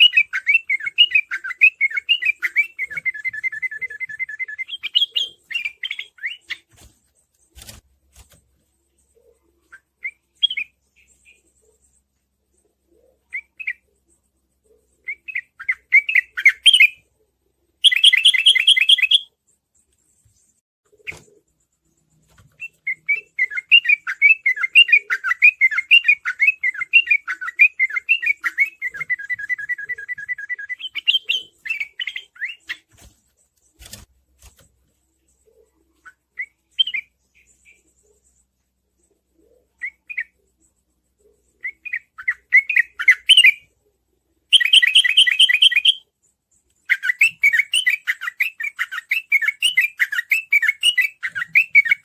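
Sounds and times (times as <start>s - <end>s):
bulbul chattering song: 0.0s - 6.7s, 17.7s - 20.2s, 20.9s - 32.9s, 35.3s - 43.8s, 44.5s - 52.0s.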